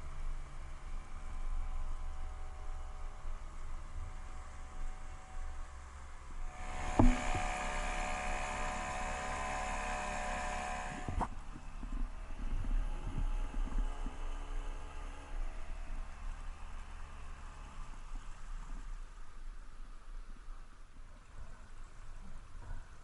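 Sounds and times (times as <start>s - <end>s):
small motor whirring: 6.4s - 17.9s.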